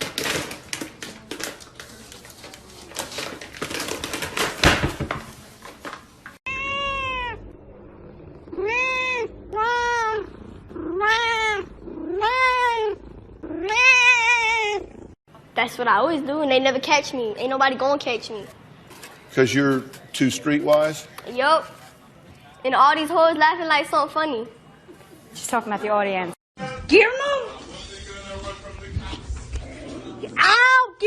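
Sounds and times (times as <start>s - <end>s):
cat meowing: 6.5s - 7.5s, 8.5s - 15.0s.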